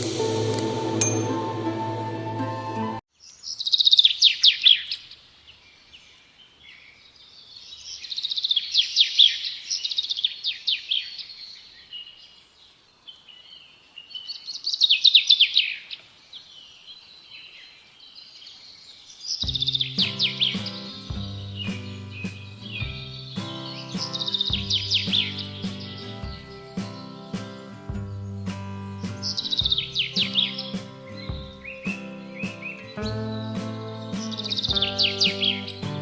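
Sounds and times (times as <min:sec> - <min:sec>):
songbird singing: 0:00.0 - 0:01.4, 0:03.2 - 0:36.0
music: 0:00.0 - 0:03.0, 0:19.5 - 0:36.0.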